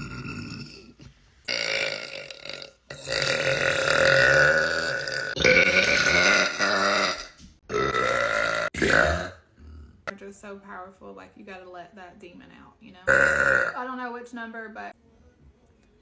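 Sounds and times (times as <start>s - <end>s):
woman burping: 0.0s - 9.5s, 13.1s - 13.8s.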